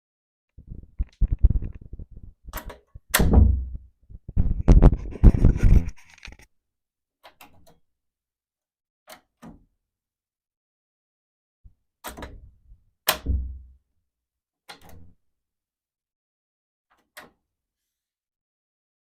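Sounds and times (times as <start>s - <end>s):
door thudding and rattling: 1.0s - 5.3s.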